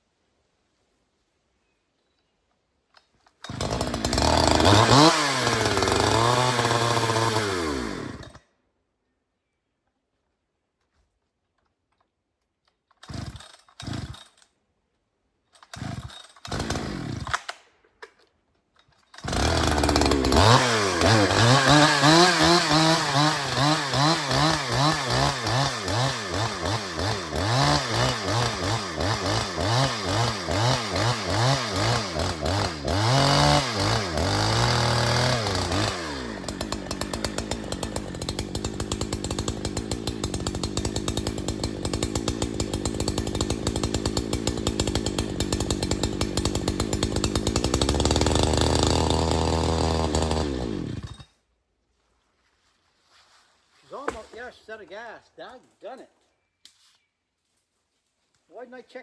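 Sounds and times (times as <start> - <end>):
chainsaw pull-start cord: 2.9 - 8.5, 12.6 - 14.6, 15.4 - 51.3
chainsaw engine revving: 3.4 - 8.4, 13.0 - 14.5, 15.6 - 17.6, 19.1 - 51.3.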